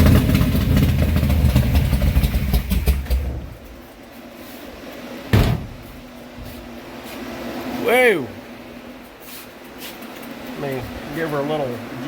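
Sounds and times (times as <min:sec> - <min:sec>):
car engine rumbling: 0:00.0 - 0:04.1, 0:05.2 - 0:09.0.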